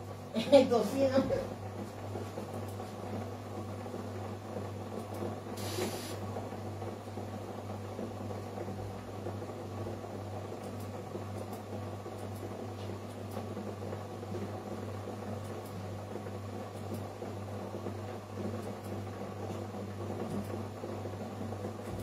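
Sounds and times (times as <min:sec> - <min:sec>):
small fan motor whirring: 0:05.0 - 0:06.4.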